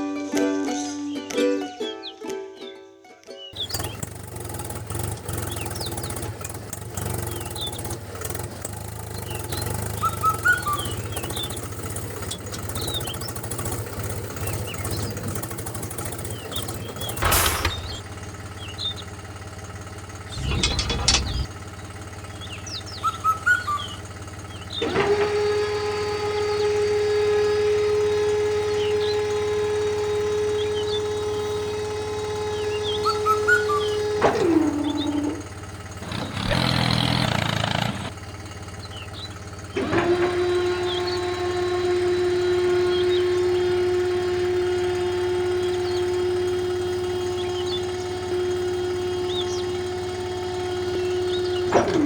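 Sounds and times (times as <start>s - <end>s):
birds chirping: 0.8s - 52.0s
small motor humming: 3.6s - 52.0s
short noisy bursts: 16.2s - 18.1s, 20.3s - 21.5s.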